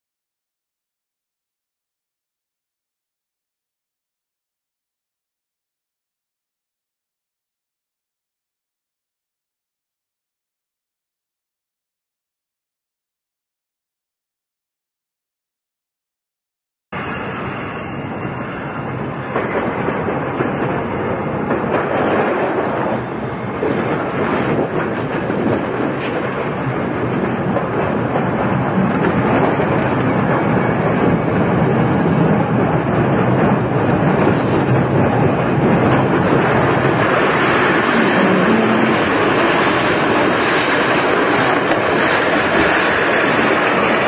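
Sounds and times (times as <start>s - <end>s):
train rumbling on rails: 17.0s - 44.0s.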